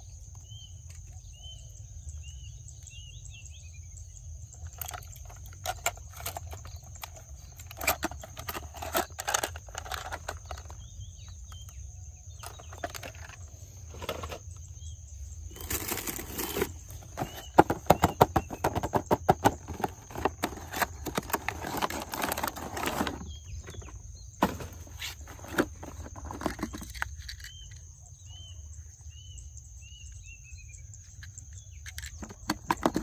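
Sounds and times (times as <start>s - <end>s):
plastic toy cars clattering: 4.6s - 14.6s, 15.5s - 27.9s, 31.1s - 33.0s.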